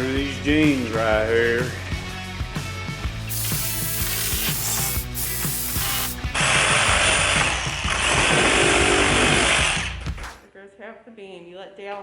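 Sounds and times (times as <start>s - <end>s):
music with steady beat: 0.3s - 6.4s
power saw cutting wood: 3.8s - 9.9s.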